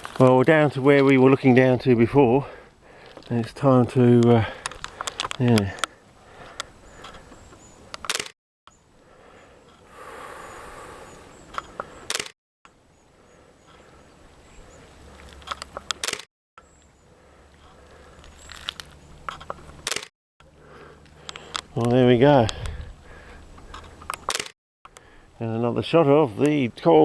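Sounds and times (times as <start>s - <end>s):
faint wind: 0.0s - 27.0s
camera shutter clicks: 12.1s - 12.3s, 15.9s - 16.2s, 19.8s - 20.1s, 24.3s - 24.5s.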